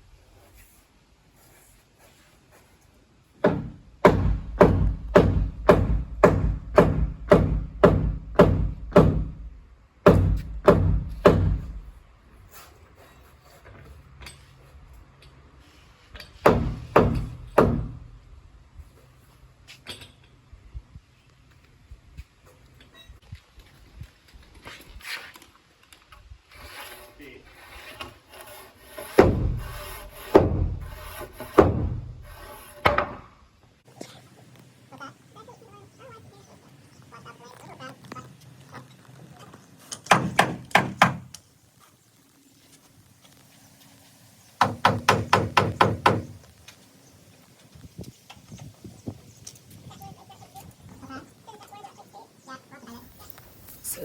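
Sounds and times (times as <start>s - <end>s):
hammer striking wood: 3.4s - 11.8s, 16.4s - 18.1s, 28.9s - 33.3s, 40.1s - 41.3s, 44.6s - 46.4s
heavy booming thuds: 3.4s - 11.9s, 29.2s - 32.3s.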